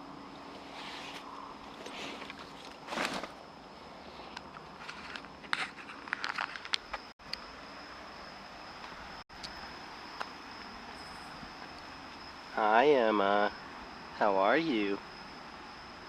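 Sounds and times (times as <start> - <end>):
high-pitched insect drone: 5.8 - 16.0.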